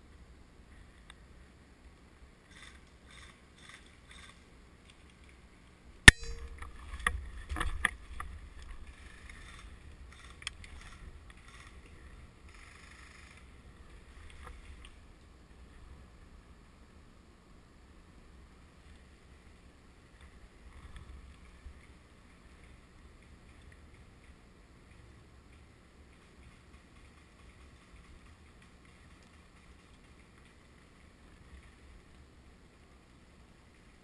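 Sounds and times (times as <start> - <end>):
sharp loud click: 6.1 - 6.7.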